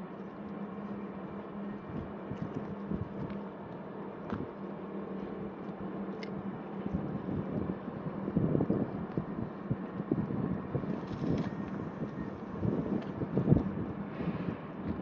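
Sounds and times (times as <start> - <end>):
steady low hum: 0.0 - 15.0
wind buffeting microphone: 1.8 - 3.4, 6.4 - 15.0.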